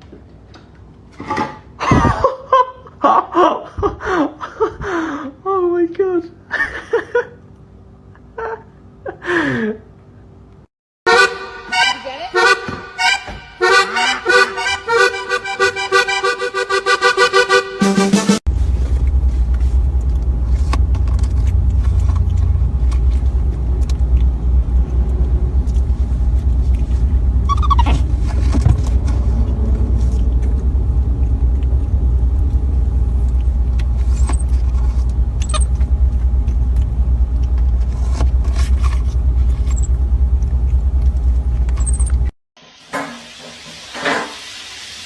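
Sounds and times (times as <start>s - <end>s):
loud low rumble: 18.5s - 42.2s
short falling squeak: 27.4s - 28.1s.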